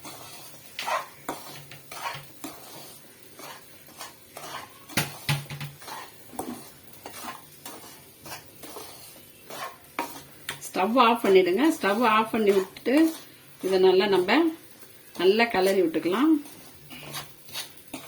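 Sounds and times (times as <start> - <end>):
spoon stirring and scraping in pan: 0.0 - 18.0
spoon clanking against pan: 3.4 - 8.8.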